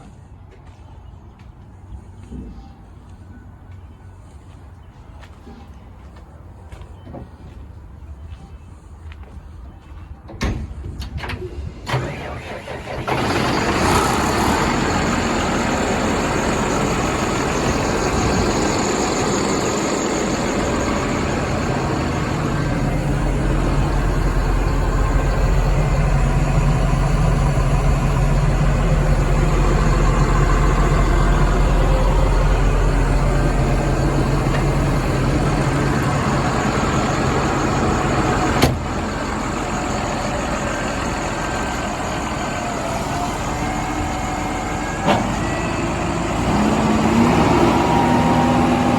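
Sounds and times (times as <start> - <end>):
diesel engine running: 11.5 - 48.9.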